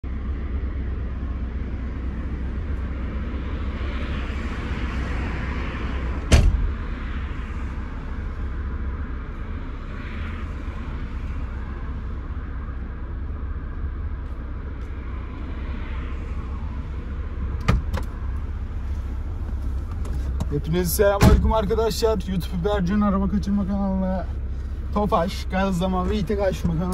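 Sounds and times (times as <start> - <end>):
car engine rumbling: 0.0 - 26.9
sharp thump: 6.3 - 6.9, 21.2 - 21.5.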